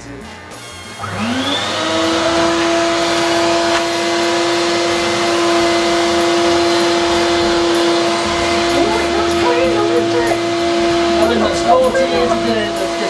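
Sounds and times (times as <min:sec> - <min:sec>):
vacuum cleaner motor whining: 0:00.6 - 0:13.0.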